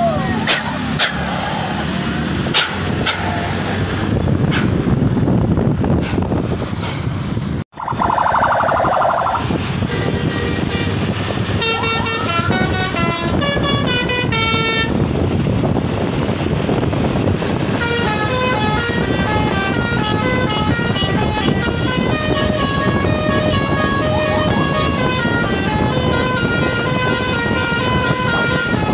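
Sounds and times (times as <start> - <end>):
engine and traffic rumble: 0.0 - 28.9
multi-tone air horn tune: 7.8 - 11.0, 11.6 - 14.9.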